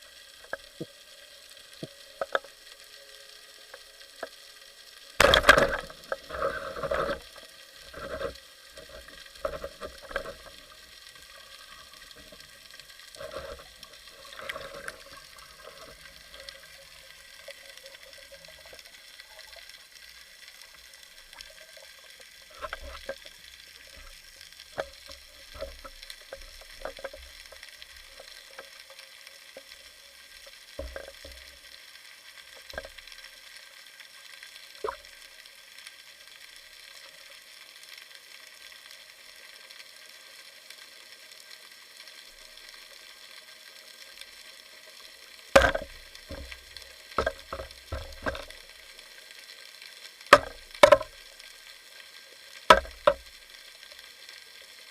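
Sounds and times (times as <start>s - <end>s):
underwater crackling hiss: 0.0s - 54.9s
underwater clicks and knocks: 1.8s - 2.5s, 5.2s - 10.6s, 22.5s - 23.3s, 24.7s - 27.6s, 30.8s - 31.5s, 32.6s - 33.0s, 45.6s - 48.6s, 50.3s - 51.2s, 52.7s - 53.4s.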